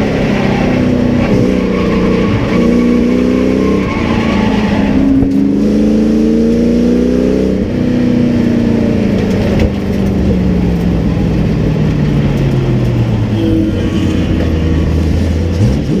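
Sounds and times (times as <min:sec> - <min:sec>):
truck engine revving: 0:00.0 - 0:16.0.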